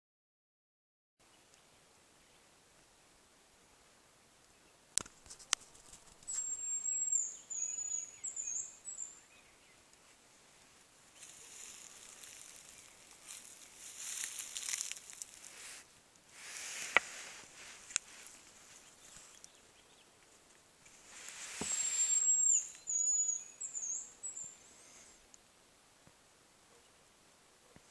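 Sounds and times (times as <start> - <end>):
rustling: 5.0 - 6.8, 10.0 - 19.6, 20.2 - 23.0
bird high thin whistle: 6.3 - 9.1, 21.5 - 24.7.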